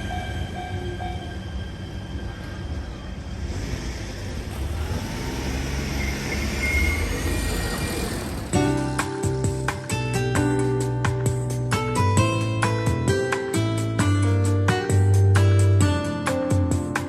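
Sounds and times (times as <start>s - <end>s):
train rumbling past: 0.0s - 9.8s
background music: 8.2s - 17.0s.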